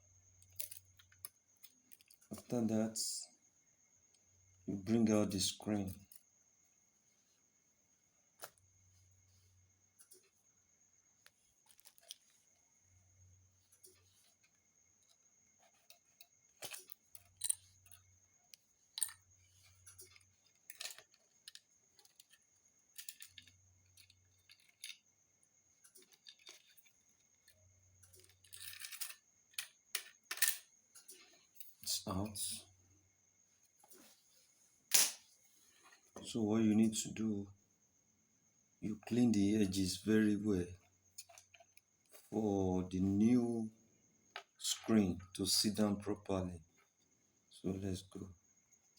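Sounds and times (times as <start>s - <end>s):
tools clicking and tapping: 19.0s - 19.2s.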